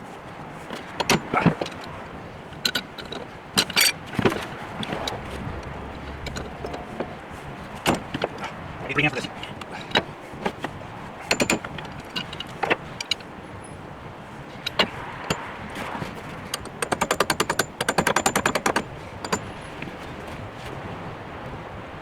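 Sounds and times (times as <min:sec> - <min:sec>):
metallic knocks: 0:02.6 - 0:13.4, 0:14.5 - 0:15.6, 0:16.4 - 0:20.0
rapid ratchet clicking: 0:16.6 - 0:19.5.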